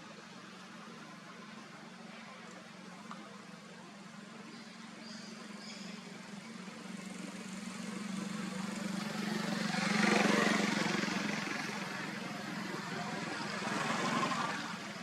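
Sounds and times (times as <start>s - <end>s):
vehicle passing by: 7.0s - 15.0s.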